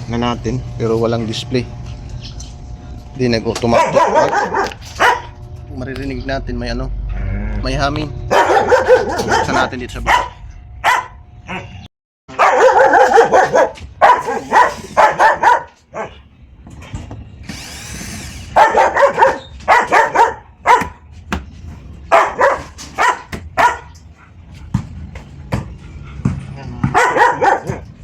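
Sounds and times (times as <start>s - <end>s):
dog barking: 3.6s - 5.4s, 8.3s - 16.2s, 18.5s - 21.1s, 22.1s - 24.4s, 26.8s - 28.0s.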